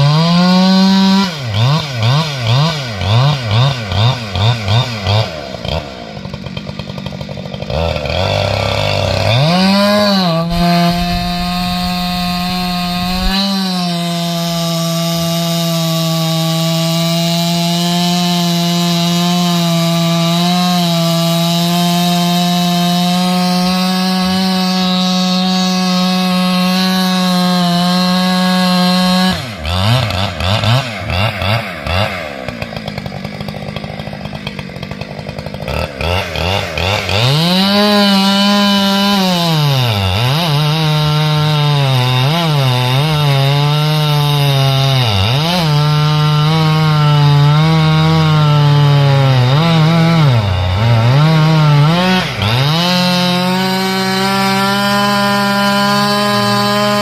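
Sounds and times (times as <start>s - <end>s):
chainsaw cutting logs: 0.0s - 57.0s.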